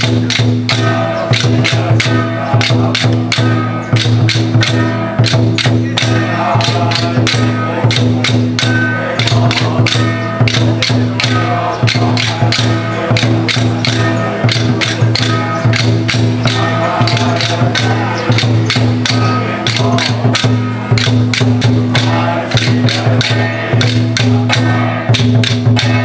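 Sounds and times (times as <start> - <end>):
quick percussion strikes: 0.0 - 26.0.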